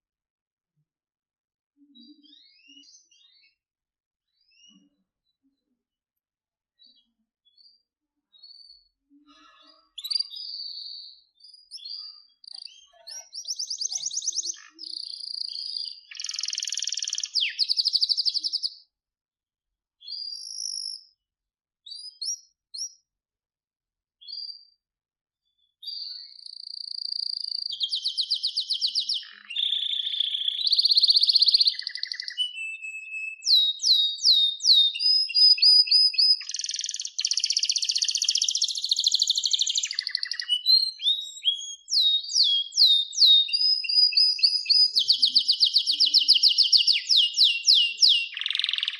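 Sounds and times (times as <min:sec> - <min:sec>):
canary singing: 0:09.8 - 0:18.9, 0:20.0 - 0:21.2, 0:21.9 - 0:23.0, 0:25.8 - 0:48.9.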